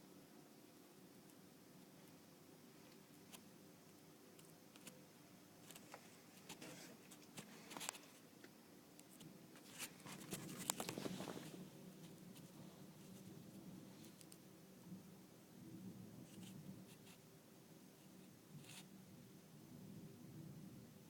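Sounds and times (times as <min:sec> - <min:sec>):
faint rustles: 0:09.1 - 0:14.4.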